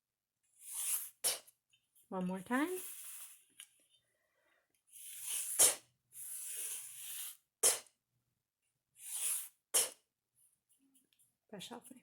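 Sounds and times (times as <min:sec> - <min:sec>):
finger tracing in cornmeal: 0:00.6 - 0:01.5, 0:02.6 - 0:03.4, 0:04.9 - 0:07.9, 0:09.0 - 0:10.0.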